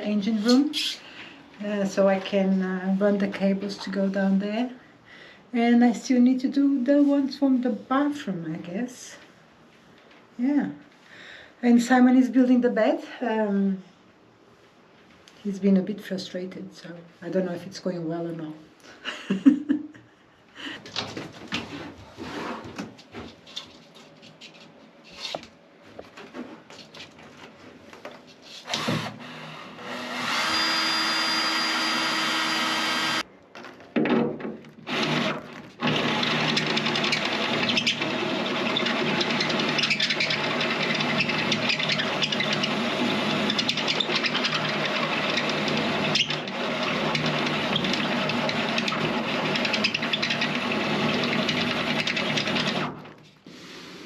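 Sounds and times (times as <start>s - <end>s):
power tool whining: 28.7s - 33.2s, 34.9s - 52.9s.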